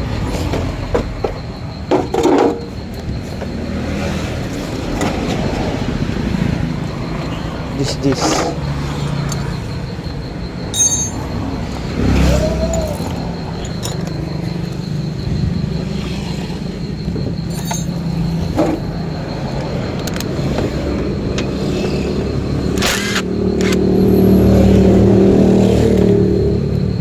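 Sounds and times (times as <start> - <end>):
car engine idling: 0.0 - 24.3
metallic clicks and clinks: 6.9 - 15.2, 17.0 - 23.9.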